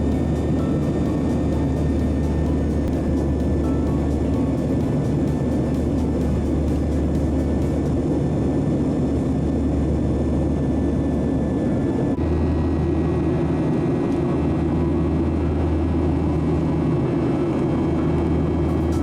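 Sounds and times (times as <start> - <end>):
jet engines droning: 0.0 - 19.0
rush of air in cabin: 0.0 - 19.0.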